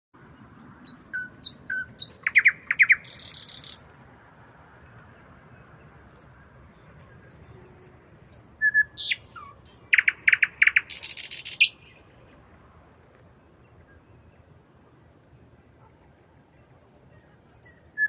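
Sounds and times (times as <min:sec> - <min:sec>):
nightingale singing: 0:00.3 - 0:03.9, 0:05.1 - 0:12.1, 0:16.1 - 0:18.0.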